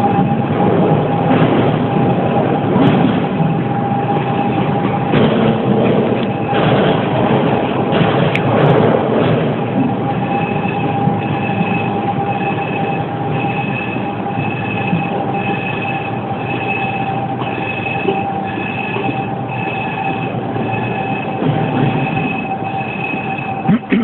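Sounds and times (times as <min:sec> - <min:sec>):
subway train running: 0:00.0 - 0:24.0
high beeping tone: 0:09.9 - 0:24.0.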